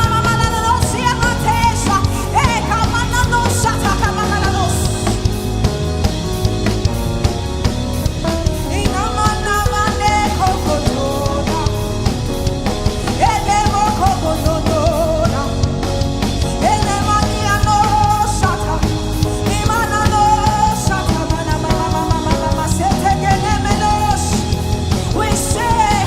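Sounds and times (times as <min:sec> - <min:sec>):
worship band with drums and guitar: 0:00.0 - 0:26.0.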